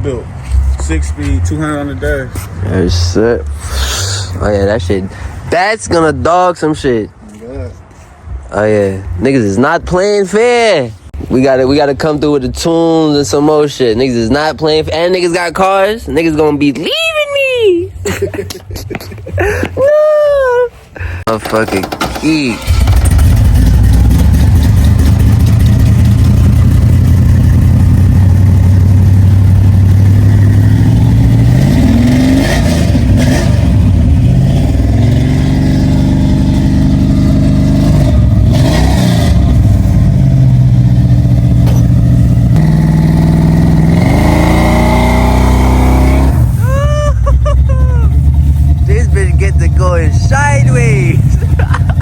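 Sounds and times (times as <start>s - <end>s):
car engine revving: 21.4s - 52.0s.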